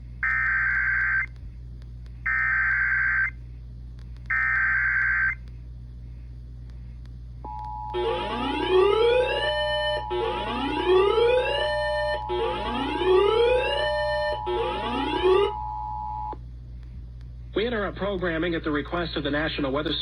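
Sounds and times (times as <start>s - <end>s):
steady attention tone: 7.4s - 16.4s
warbling digital data tones: 7.8s - 16.4s
whooping siren sweep: 7.9s - 16.4s.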